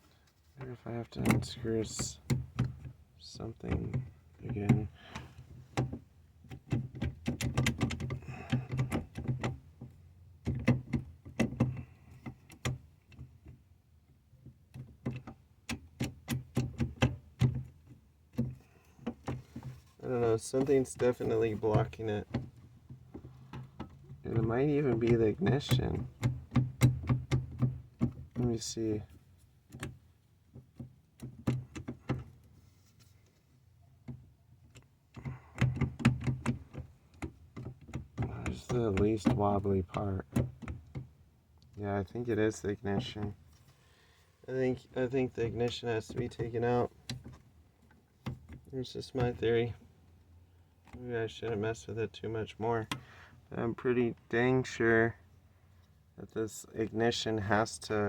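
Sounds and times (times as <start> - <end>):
plastic parts clicking and knocking: 3.7 - 13.6, 24.9 - 28.4, 34.0 - 41.8.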